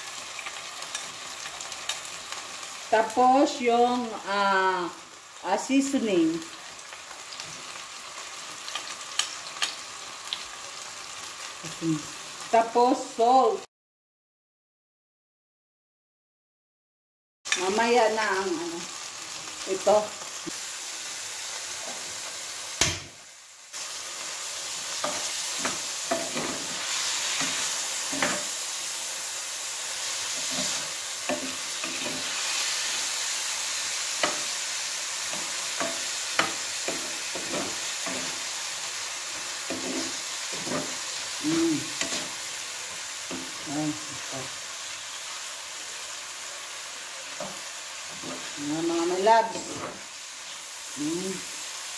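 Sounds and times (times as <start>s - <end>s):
chicken sizzling in oil: 0.0s - 13.6s, 17.5s - 51.9s
utensil scraping a pan: 39.7s - 41.0s.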